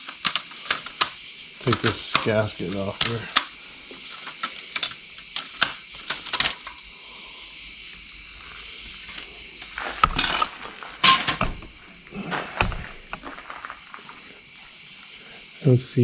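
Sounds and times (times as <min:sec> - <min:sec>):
metal parts clicking and scraping: 0:00.0 - 0:06.9, 0:08.0 - 0:11.8.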